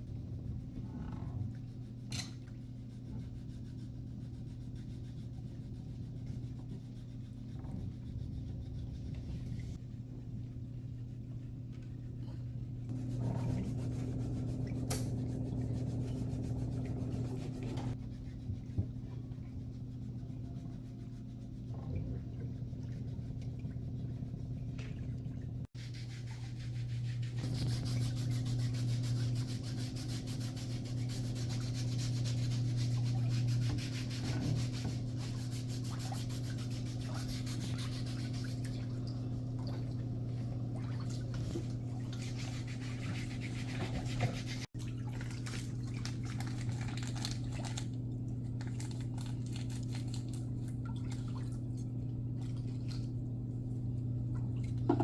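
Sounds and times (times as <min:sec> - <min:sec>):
low electrical hum: 0:00.0 - 0:55.0
rubbing and scraping on skin: 0:25.7 - 0:38.7, 0:41.4 - 0:44.7.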